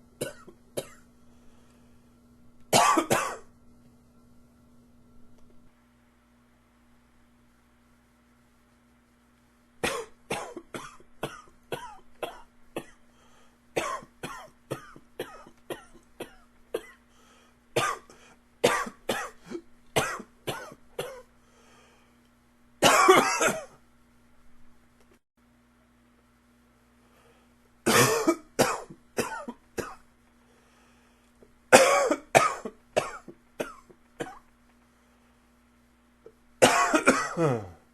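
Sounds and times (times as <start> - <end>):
man coughing: 2.8 - 3.5, 9.8 - 13.0, 22.8 - 23.8, 27.9 - 30.0, 31.8 - 34.4, 36.6 - 37.8.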